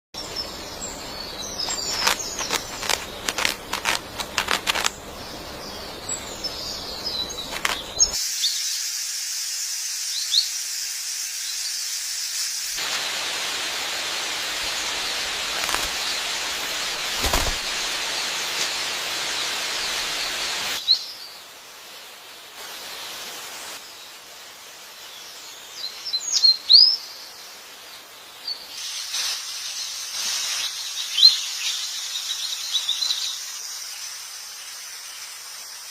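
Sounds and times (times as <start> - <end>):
bird chirps: 0.2 - 8.8
steady high hiss: 0.2 - 35.9
rapid clicks: 1.7 - 5.0.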